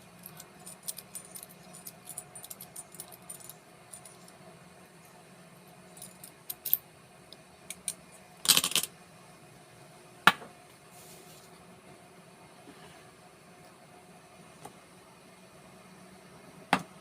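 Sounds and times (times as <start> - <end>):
metal padlock parts clicking: 0.2 - 3.5
metal parts clattering rattle: 0.2 - 4.2.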